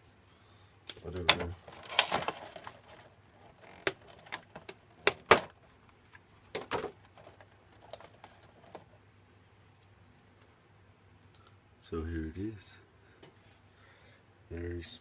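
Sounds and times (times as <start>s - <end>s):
clicks of handling a model and packaging: 0.9s - 8.9s.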